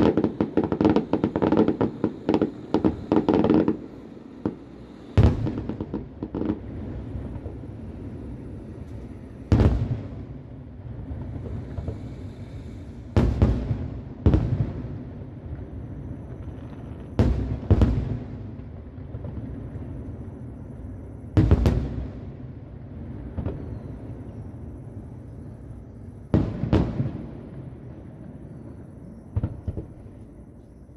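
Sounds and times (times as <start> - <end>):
distant firework booms: 0.0 - 8.3, 9.4 - 12.4, 13.0 - 20.4, 21.3 - 22.4, 29.3 - 30.2
firework crackle: 0.0 - 30.6.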